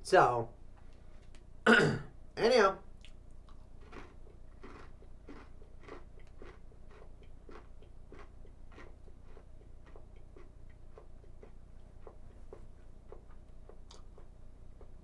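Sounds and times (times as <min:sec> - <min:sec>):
person chewing crunchy snacks: 0:03.0 - 0:15.0.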